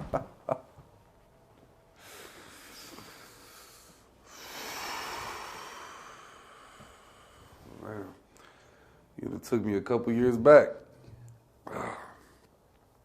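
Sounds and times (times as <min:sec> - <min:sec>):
person breathing deeply: 0:02.0 - 0:09.1.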